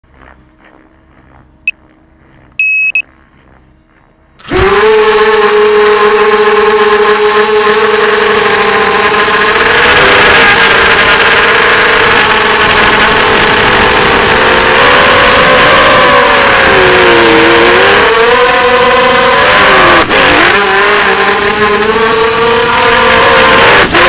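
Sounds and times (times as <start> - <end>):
drone motors whining: 0.1 - 24.0
short electronic beep: 2.6 - 3.0, 4.4 - 4.6
two-tone beep: 2.6 - 3.0, 4.4 - 4.6.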